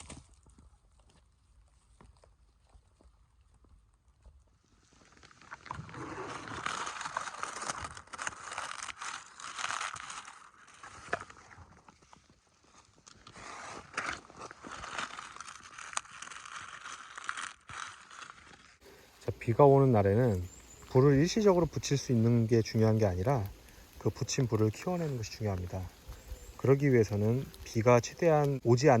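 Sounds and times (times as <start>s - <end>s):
dry leaves rustling and crunching: 6.0s - 29.0s.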